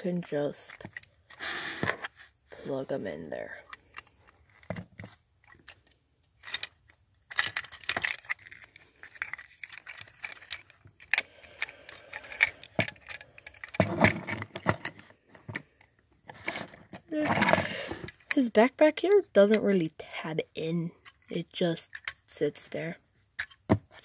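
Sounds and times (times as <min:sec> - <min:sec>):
plastic toy parts clicking: 0:00.6 - 0:01.2, 0:03.6 - 0:15.6, 0:21.0 - 0:22.3, 0:23.3 - 0:23.7.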